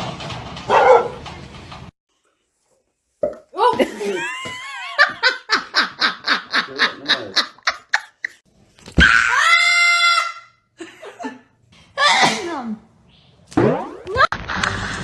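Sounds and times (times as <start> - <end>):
person laughing: 3.6 - 8.4.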